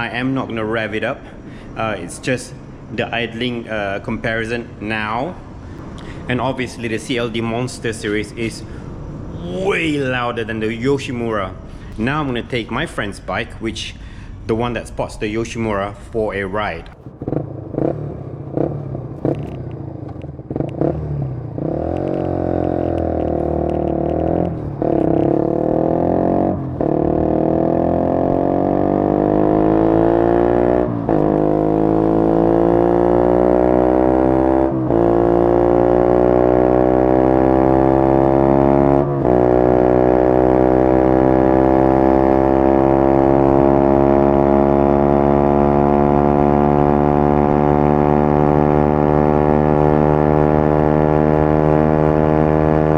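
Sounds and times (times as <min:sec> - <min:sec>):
motorcycle engine accelerating: 0:16.9 - 0:52.9.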